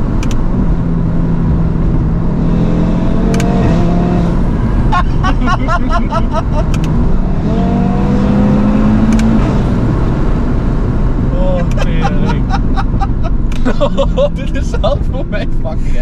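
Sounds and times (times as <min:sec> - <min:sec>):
exhaust cracks at gear changes: 0:00.0 - 0:02.2, 0:03.1 - 0:04.9, 0:06.6 - 0:07.6, 0:08.2 - 0:12.0, 0:13.3 - 0:13.8
car engine revving: 0:00.0 - 0:16.0
rapid exhaust pops: 0:06.3 - 0:07.3.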